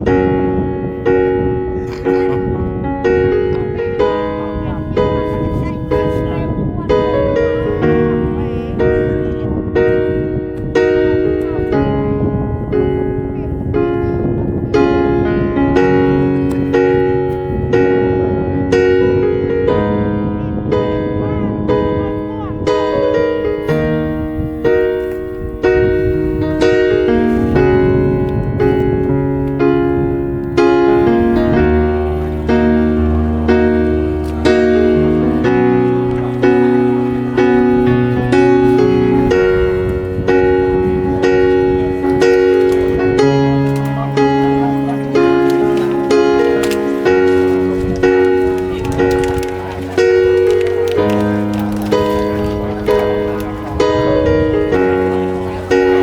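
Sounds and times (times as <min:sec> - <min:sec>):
piano chords: 0:00.0 - 0:56.0.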